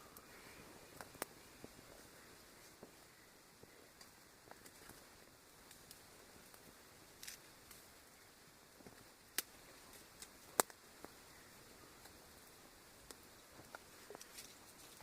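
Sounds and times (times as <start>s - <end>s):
campfire crackling: 0.0s - 15.0s
sharp pops of fire: 4.0s - 8.2s, 8.8s - 11.2s.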